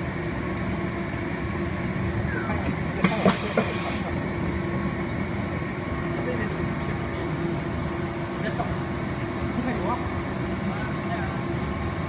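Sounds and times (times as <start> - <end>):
hiss: 3.0 - 4.1.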